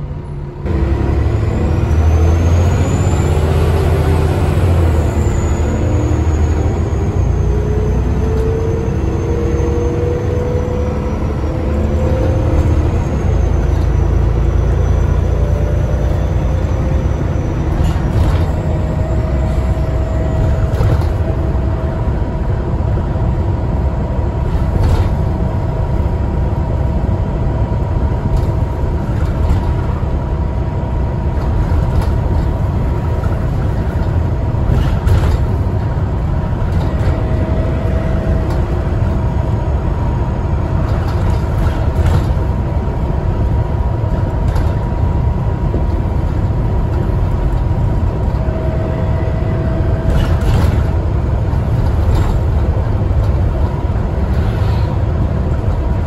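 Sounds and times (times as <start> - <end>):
bus engine and road rumble: 0.0 - 56.0
body rattles and knocks: 31.3 - 39.2, 40.8 - 43.1, 44.0 - 48.5, 50.0 - 54.6.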